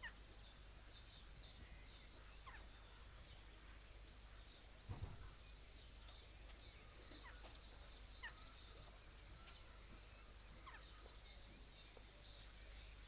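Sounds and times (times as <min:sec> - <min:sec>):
faint bird chirps: 0:00.0 - 0:13.0
low steady hum: 0:00.0 - 0:13.0.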